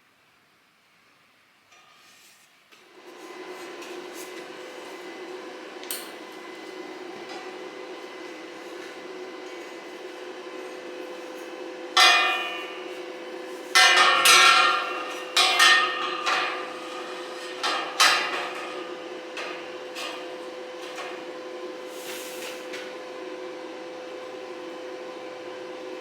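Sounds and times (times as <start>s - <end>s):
steady hum: 2.9s - 26.0s
hammer striking metal: 12.0s - 13.1s, 13.7s - 20.2s.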